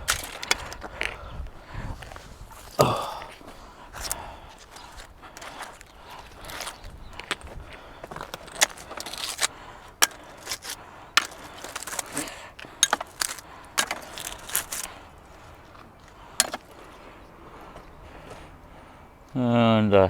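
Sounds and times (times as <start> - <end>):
scraping: 4.0 - 17.0
hard objects clicking and knocking: 6.5 - 14.9, 16.4 - 16.8.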